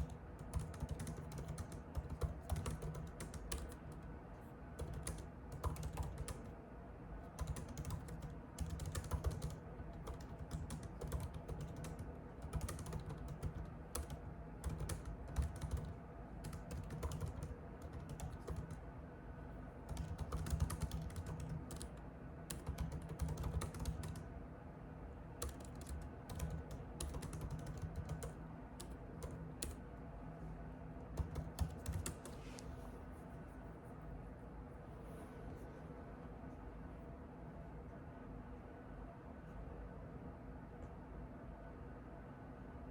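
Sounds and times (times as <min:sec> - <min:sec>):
computer keyboard typing: 0:00.0 - 0:04.1, 0:04.8 - 0:06.6, 0:07.3 - 0:18.8, 0:19.9 - 0:24.2, 0:25.4 - 0:29.8, 0:31.1 - 0:32.4.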